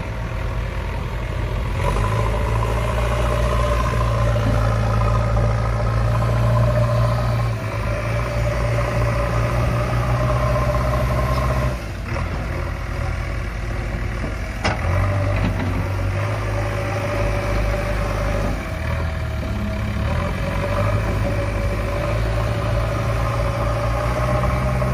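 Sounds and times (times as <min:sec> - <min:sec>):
diesel engine running: 0:00.0 - 0:24.9.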